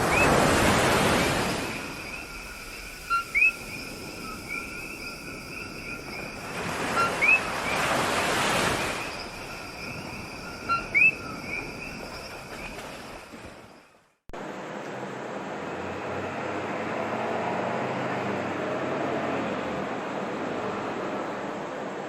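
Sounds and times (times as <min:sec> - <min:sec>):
waves rushing: 0:00.0 - 0:13.8
frogs calling two-note calls: 0:01.7 - 0:08.1, 0:08.8 - 0:12.0.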